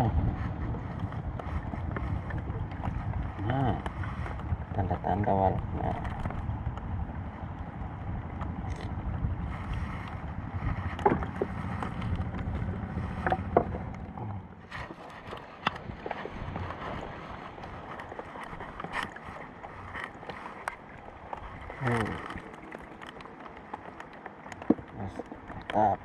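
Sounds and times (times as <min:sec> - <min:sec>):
wind rumbling on microphone: 0:00.0 - 0:26.0
light knocks and clicks: 0:10.8 - 0:14.1.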